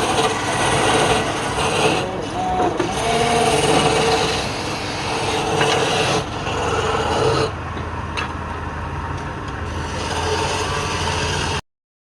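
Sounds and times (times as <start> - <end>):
wood scraping on a lathe: 0.0 - 7.6, 9.6 - 11.6
lathe motor hum: 0.0 - 7.8, 9.5 - 11.6.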